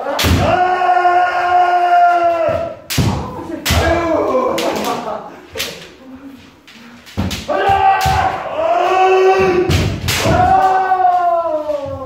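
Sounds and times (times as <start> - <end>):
people shouting: 0.0 - 5.2, 7.2 - 12.0
bamboo sword strikes: 2.9 - 4.9, 9.4 - 11.0.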